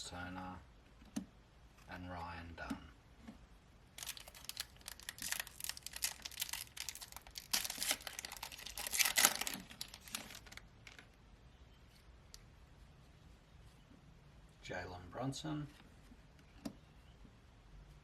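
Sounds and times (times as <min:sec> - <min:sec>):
card pack wrapper tearing: 0:04.0 - 0:11.1.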